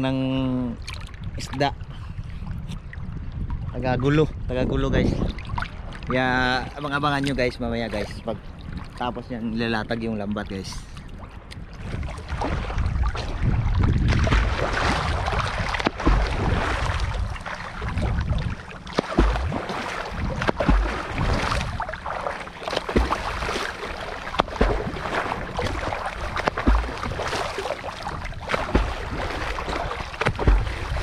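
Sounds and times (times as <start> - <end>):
wind buffeting microphone: 0.0 - 31.0
sea water splashing: 0.7 - 3.9, 5.2 - 31.0
low thumps: 12.3 - 23.5, 24.3 - 27.4, 28.1 - 31.0.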